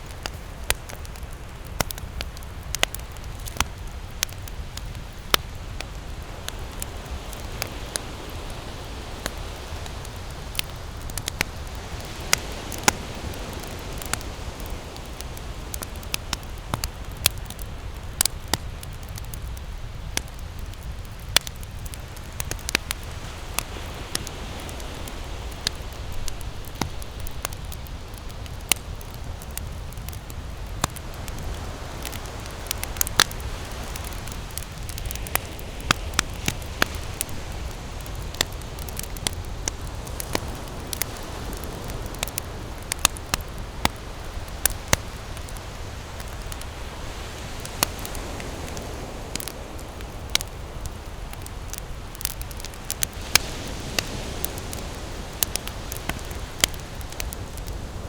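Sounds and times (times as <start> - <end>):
campfire crackling and popping: 0.0 - 58.0
low fire rumble: 0.0 - 58.0.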